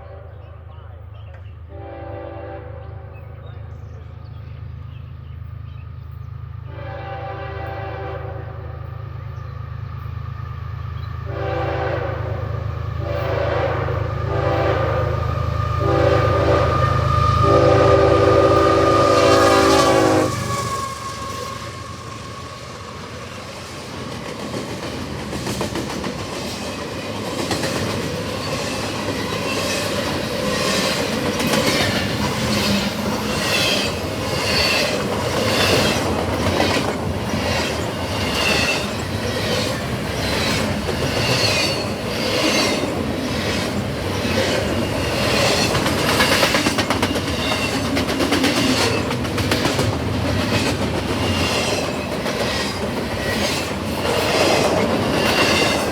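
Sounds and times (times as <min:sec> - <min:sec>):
train cars rolling past: 0:00.0 - 0:55.9
high wheel squeals: 0:15.2 - 0:23.6
wheels clacking over rail joints: 0:23.0 - 0:55.9.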